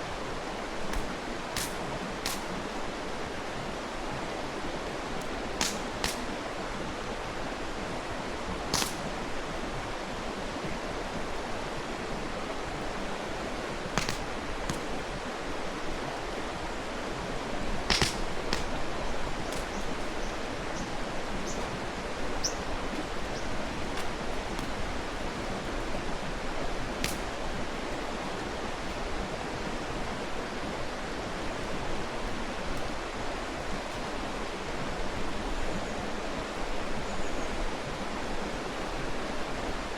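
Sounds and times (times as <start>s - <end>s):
mountain stream rushing: 0.0s - 39.9s
campfire crackles and pops: 0.6s - 3.4s, 5.0s - 6.6s, 8.6s - 9.6s, 13.6s - 15.9s, 17.1s - 29.0s.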